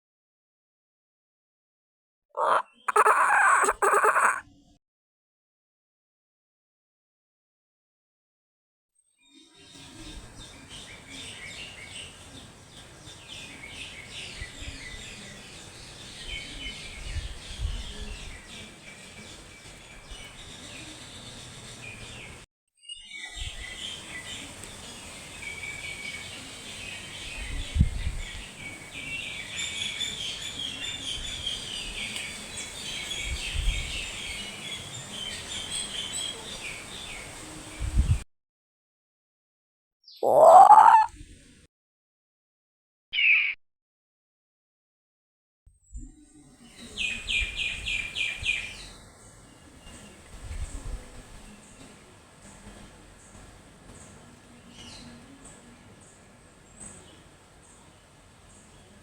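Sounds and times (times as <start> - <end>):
bird-like chirps and tweets: 9.2 - 38.2, 40.1 - 41.1, 45.8 - 59.0
steady outdoor hiss: 9.7 - 22.4, 23.3 - 38.2, 46.4 - 59.0.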